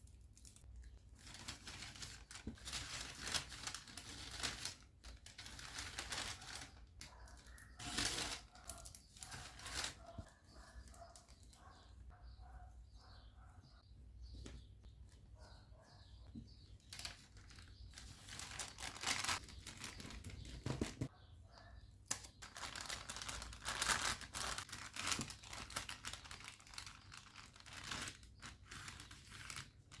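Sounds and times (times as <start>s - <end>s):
packaging crinkling and rustling: 0.3s - 10.1s, 16.8s - 21.1s, 22.2s - 30.0s.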